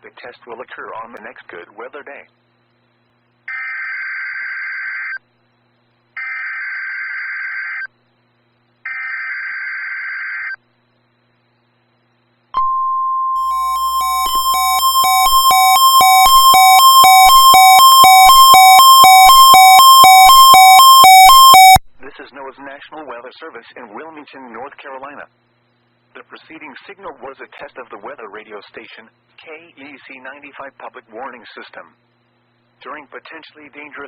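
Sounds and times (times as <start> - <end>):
pulsed electronic alarm beeps: 12.6 - 21.8
steady warning alarm tone: 13.3 - 21.8
screeching digital data bursts: 13.4 - 21.8.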